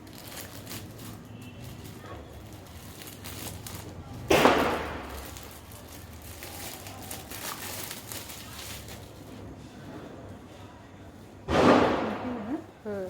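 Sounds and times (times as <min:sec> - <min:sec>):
packaging rustling: 0:00.0 - 0:09.4.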